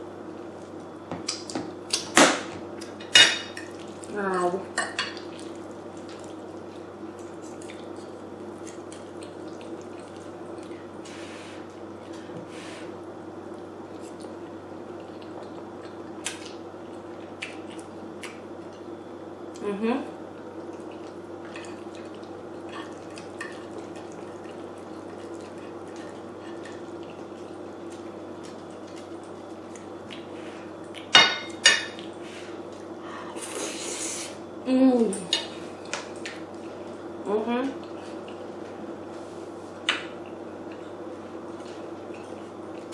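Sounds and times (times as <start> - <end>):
steady low hum: 0.0 - 42.9
wet chewing: 5.1 - 12.2, 13.5 - 18.9, 20.4 - 31.1.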